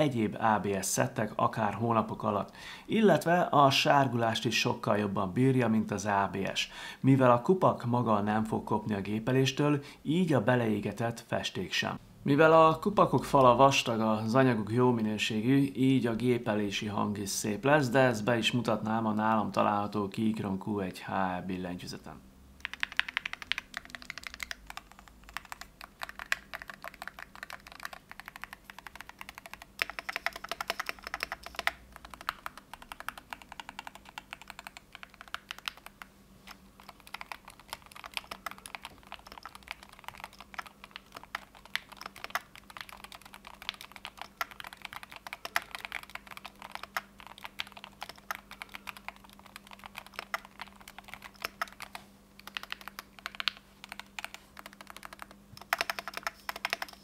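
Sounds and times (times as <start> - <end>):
fast typing on keyboard: 22.6 - 57.0.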